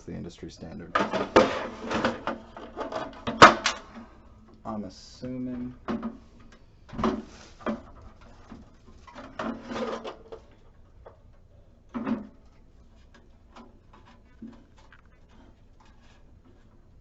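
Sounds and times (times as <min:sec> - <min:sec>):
cash drawer clunk: 0:00.9 - 0:03.9
cash drawer scraping slide: 0:01.0 - 0:03.8
cash drawer knocks and clicks: 0:01.0 - 0:03.9.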